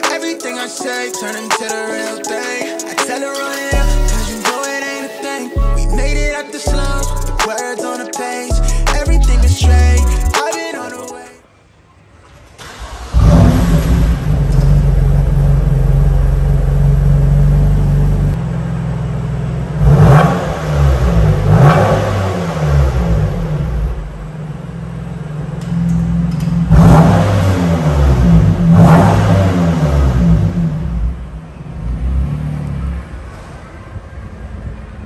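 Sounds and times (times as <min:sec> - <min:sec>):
car engine idling: 0:12.5 - 0:33.6
car engine revving in blips: 0:12.6 - 0:33.6.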